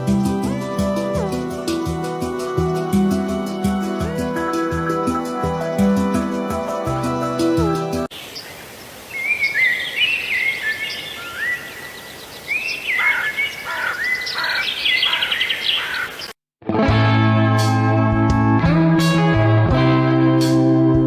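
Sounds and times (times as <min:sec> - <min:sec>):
music: 0:00.0 - 0:08.1, 0:16.6 - 0:21.0
outdoor background hiss: 0:00.0 - 0:16.3
birds chirping and singing: 0:08.1 - 0:16.4.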